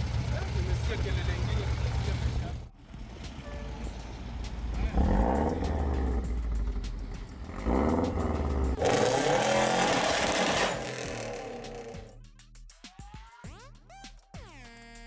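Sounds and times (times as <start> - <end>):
car engine running: 0.0 - 12.1.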